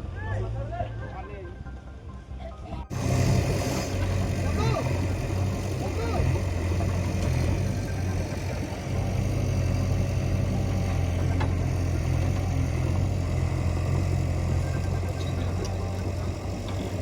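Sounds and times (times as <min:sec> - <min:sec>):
bulldozer diesel engine drone: 0:02.9 - 0:17.0.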